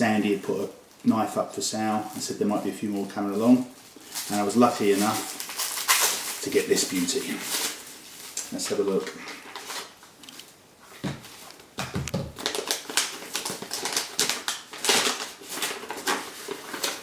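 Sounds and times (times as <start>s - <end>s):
parcel being unwrapped: 2.0s - 10.6s, 12.4s - 17.0s.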